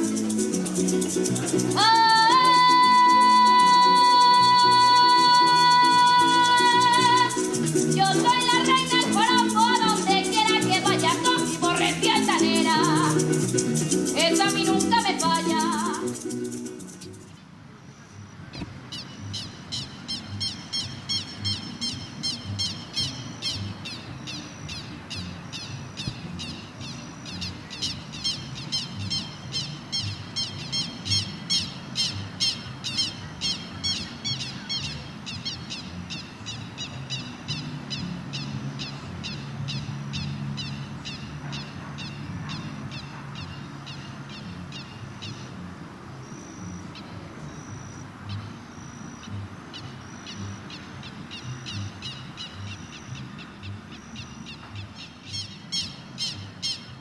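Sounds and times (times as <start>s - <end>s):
birds harsh chattering: 0.0s - 57.0s
low background rumble: 18.8s - 57.0s.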